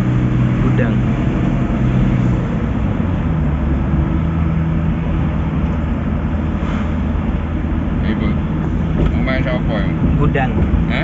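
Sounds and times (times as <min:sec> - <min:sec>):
road noise: 0:00.0 - 0:11.0
vehicle engine humming: 0:00.0 - 0:11.0.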